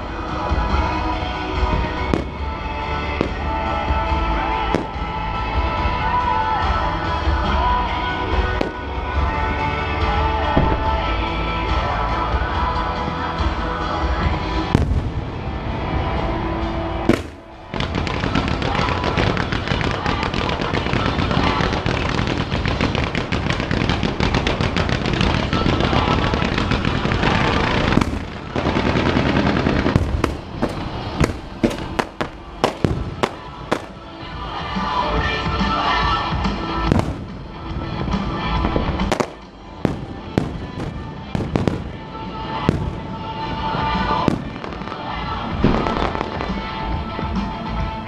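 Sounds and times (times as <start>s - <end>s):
music soundtrack: 0.0s - 48.0s
rapid crackling fireworks: 0.0s - 48.0s
fireworks bursting: 0.2s - 5.7s, 14.6s - 16.2s, 17.0s - 47.8s.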